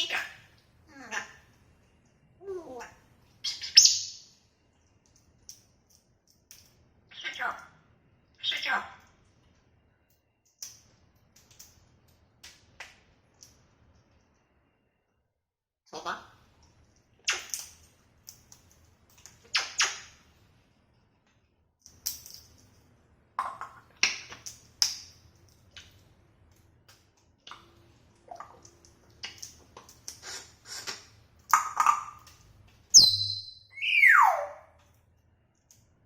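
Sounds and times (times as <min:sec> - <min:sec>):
parrot squeak: 0:33.0 - 0:34.7.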